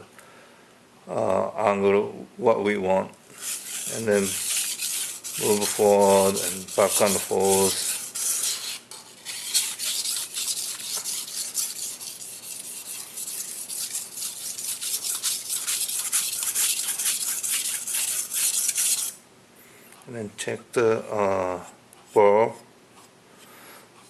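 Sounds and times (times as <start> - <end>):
knife scraping on whetstone: 3.4 - 19.2.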